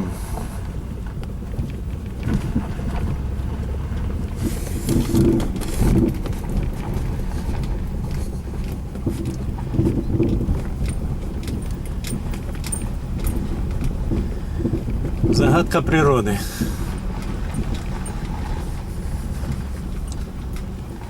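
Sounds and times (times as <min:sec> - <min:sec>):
dull suspension knocks: 0:00.0 - 0:21.0
road rumble of moving car: 0:00.0 - 0:21.0.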